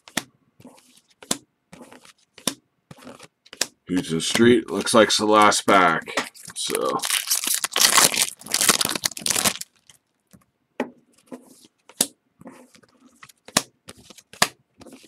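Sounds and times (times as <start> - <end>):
cards tapping and rustling: 1.0 - 9.6, 12.7 - 15.0
card pack wrapper tearing and crinkling: 6.6 - 10.0.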